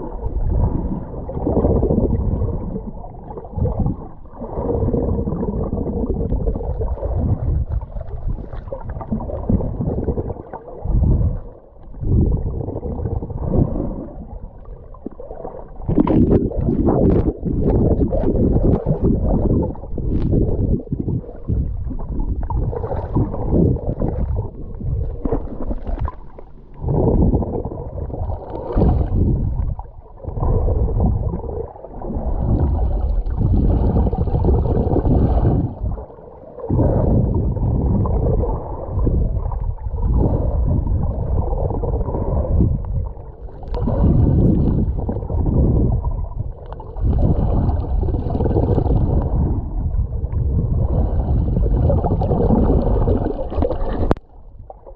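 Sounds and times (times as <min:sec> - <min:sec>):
sea: 0:00.0 - 0:54.9
wind buffeting microphone: 0:15.9 - 0:25.3, 0:36.7 - 0:54.6.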